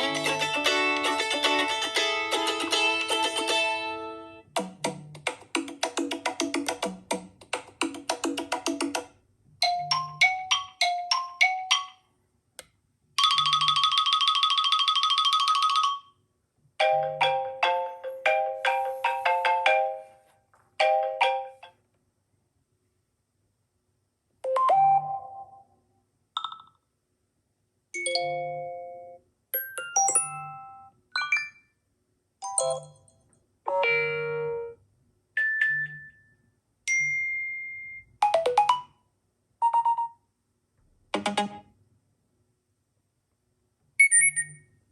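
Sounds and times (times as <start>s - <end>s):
phone alert chimes: 29.6s - 31.6s, 44.0s - 44.6s.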